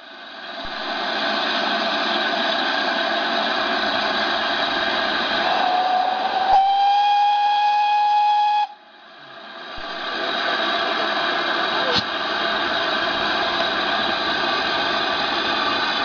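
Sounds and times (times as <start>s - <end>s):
steam hiss: 0.0s - 16.0s
steam whistle blast: 5.4s - 8.9s.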